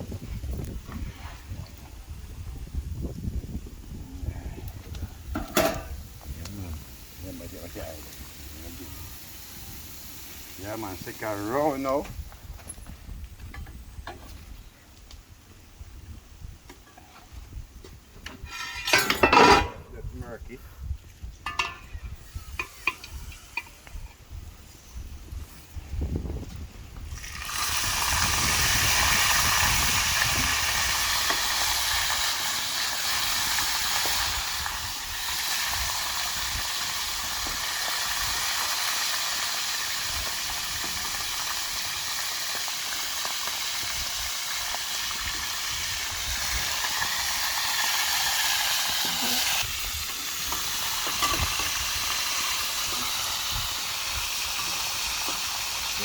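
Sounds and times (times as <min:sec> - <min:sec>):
fish sizzling in hot oil: 0:05.7 - 0:12.0, 0:21.4 - 0:23.9, 0:27.1 - 0:56.0.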